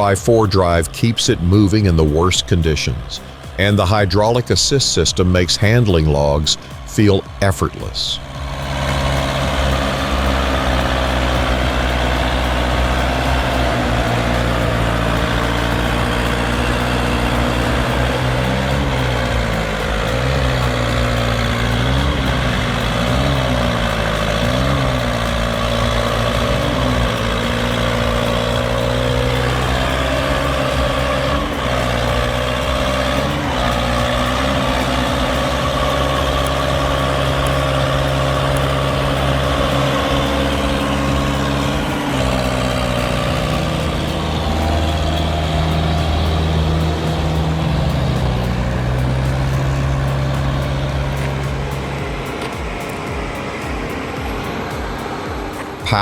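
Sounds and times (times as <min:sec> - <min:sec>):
heavy vehicle engine running: 0:00.0 - 0:56.0.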